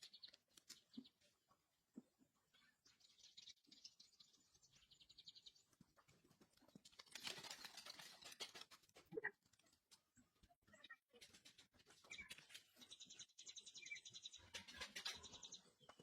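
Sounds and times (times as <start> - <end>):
bird chirping: 0.0 - 1.6, 2.3 - 6.0, 10.2 - 16.0.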